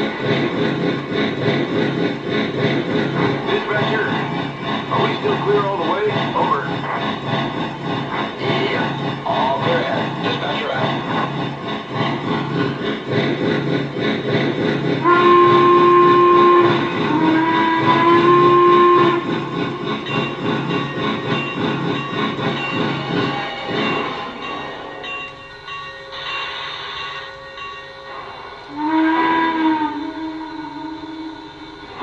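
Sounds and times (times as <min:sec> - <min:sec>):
steam exhaust chuffing: 0:00.0 - 0:32.0
steam whistle blasts: 0:15.0 - 0:19.8, 0:28.6 - 0:32.0.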